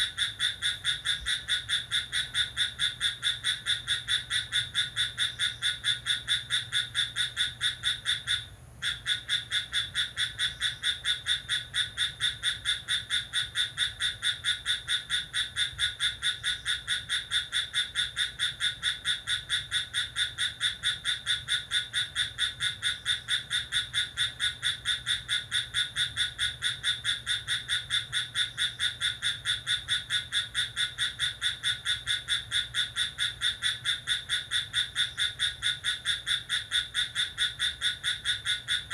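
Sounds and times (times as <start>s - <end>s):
crickets chirping: 0.0s - 38.9s.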